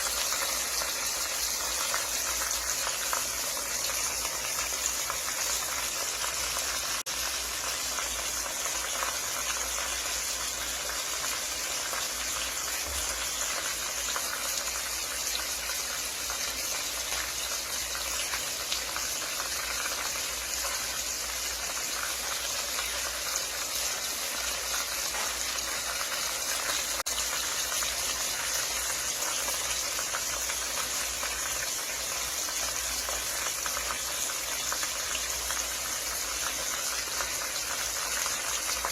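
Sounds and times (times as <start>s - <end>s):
food sizzling in hot oil: 0.0s - 38.9s.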